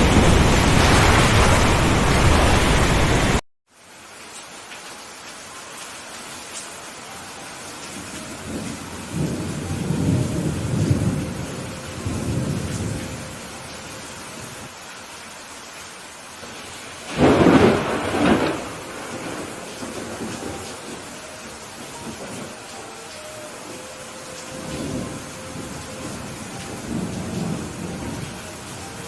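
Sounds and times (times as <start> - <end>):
sharp thunderclap: 0.0 - 3.4, 17.1 - 20.5
thunder rumbling: 0.0 - 3.4, 8.4 - 13.6, 17.1 - 22.6, 24.6 - 29.0
steady rain: 0.0 - 29.0.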